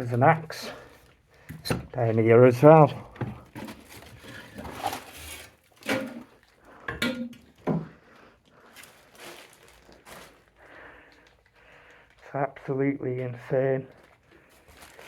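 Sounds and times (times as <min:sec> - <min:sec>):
hard objects knocking and clattering: 0:02.9 - 0:05.1, 0:05.8 - 0:08.0.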